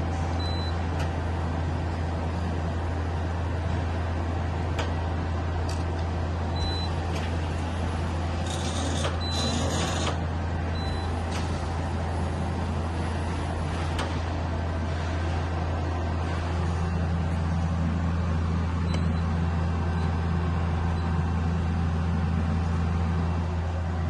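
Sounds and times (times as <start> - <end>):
lathe humming: 7.5 - 10.7.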